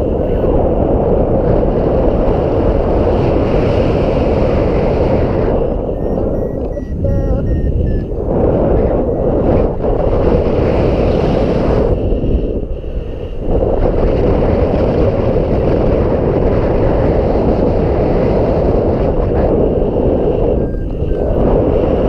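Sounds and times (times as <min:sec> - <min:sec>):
wind buffeting microphone: 0:00.0 - 0:22.0.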